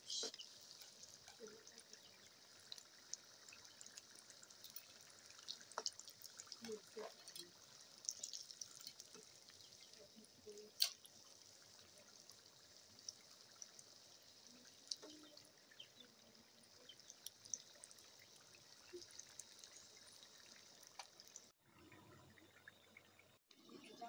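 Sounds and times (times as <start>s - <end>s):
food sizzling in hot oil: 0.0s - 21.5s
oil popping and crackling: 0.0s - 21.5s.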